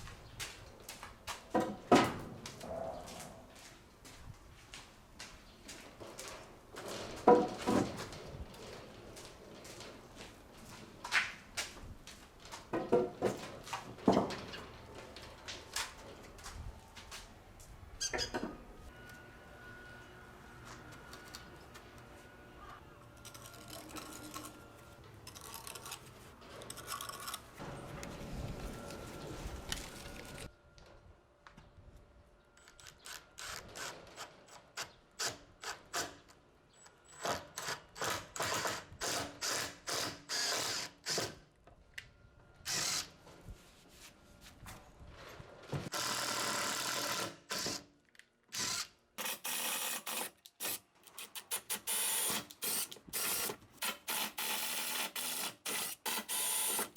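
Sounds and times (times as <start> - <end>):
mixed work noise: 0.0 - 56.9
power tool bursts: 45.9 - 47.8, 51.4 - 56.9.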